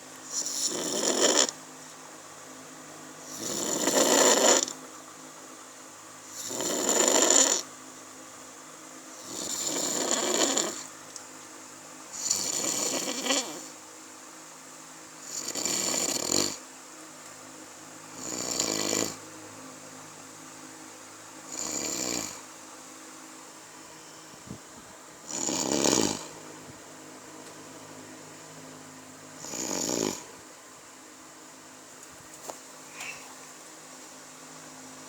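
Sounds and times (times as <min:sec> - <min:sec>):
person snoring: 0:00.3 - 0:01.6, 0:03.3 - 0:04.8, 0:06.3 - 0:07.7, 0:09.2 - 0:10.9, 0:12.2 - 0:13.7, 0:15.2 - 0:16.6, 0:18.2 - 0:19.2, 0:21.5 - 0:22.4, 0:25.2 - 0:26.4, 0:29.4 - 0:30.3.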